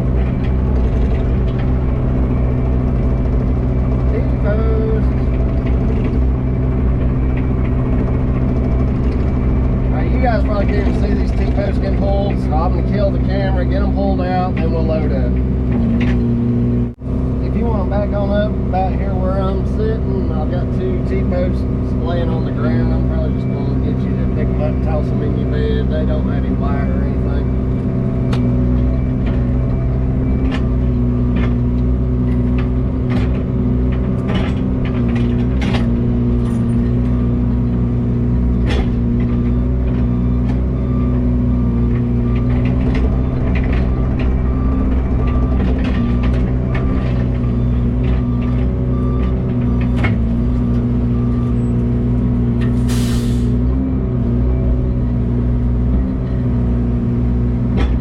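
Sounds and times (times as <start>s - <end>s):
diesel truck engine idling: 0.0s - 58.0s
air brake hiss: 52.8s - 53.6s.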